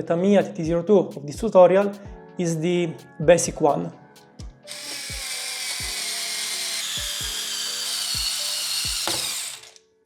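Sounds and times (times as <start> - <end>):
background music with beat: 0.4 - 5.2
electric screwdriver whining: 4.7 - 9.8.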